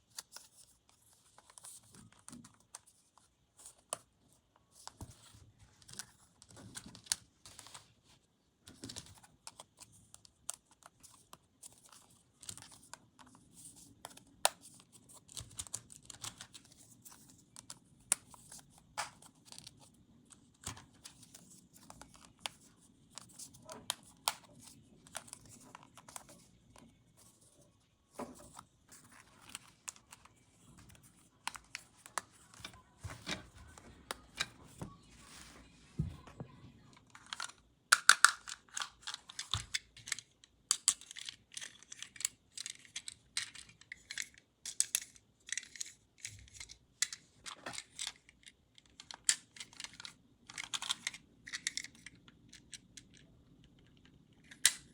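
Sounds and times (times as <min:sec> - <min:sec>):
plastic pieces clicking: 0:37.1 - 0:54.9.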